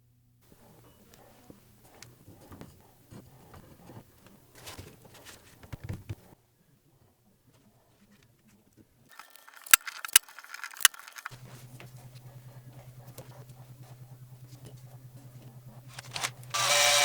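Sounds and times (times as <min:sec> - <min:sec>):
handling noise: 0:09.1 - 0:13.5
sharp clicks: 0:09.2 - 0:11.3
small power tool running: 0:15.9 - 0:17.0.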